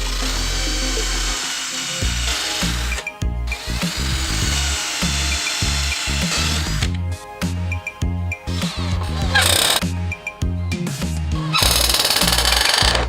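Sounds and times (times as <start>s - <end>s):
power tool whining: 0.0s - 7.0s, 8.5s - 9.8s, 11.6s - 13.0s
background music: 0.0s - 13.0s.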